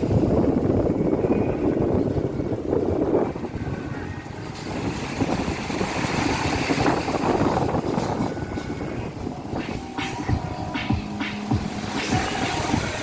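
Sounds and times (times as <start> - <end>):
sea surf washing onto shore: 0.0 - 13.0.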